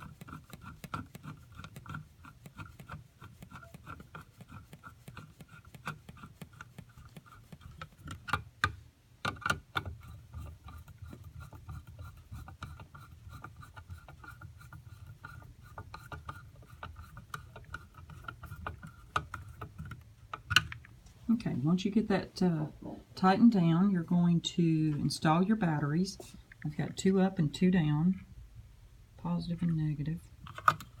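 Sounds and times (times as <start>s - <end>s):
screwdriver clicking and rubbing: 0.0s - 8.4s, 9.2s - 20.9s, 30.4s - 31.0s.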